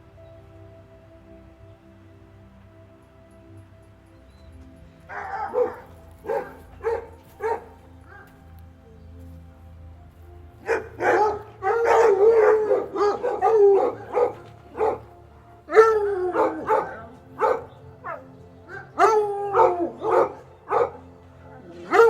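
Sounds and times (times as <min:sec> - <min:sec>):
dog barking and howling: 0:05.1 - 0:08.3, 0:10.6 - 0:22.0.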